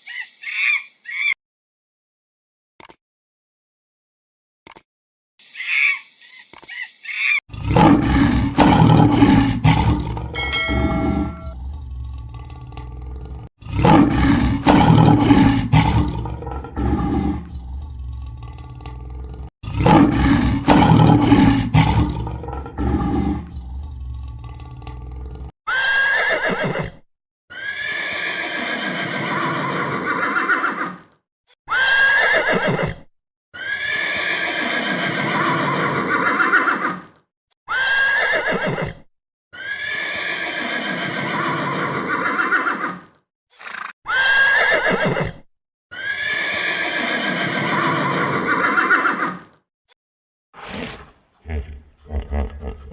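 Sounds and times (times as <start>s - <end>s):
lion roaring: 7.5s - 25.5s
horse whinnying: 25.7s - 31.1s, 31.7s - 37.0s, 37.7s - 49.5s.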